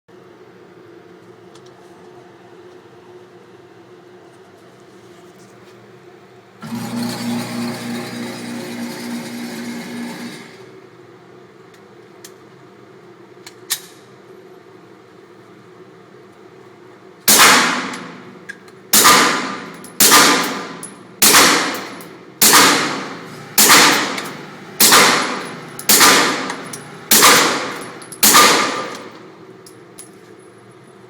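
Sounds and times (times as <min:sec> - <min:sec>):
suppressed pistol shots: 0:17.3 - 0:18.2, 0:19.0 - 0:29.2.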